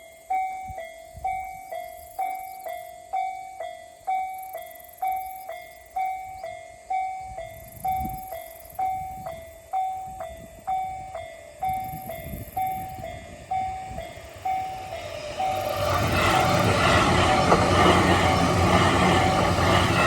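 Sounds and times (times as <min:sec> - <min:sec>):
level-crossing bell ringing: 0:00.1 - 0:20.0
train rumble: 0:05.8 - 0:20.0.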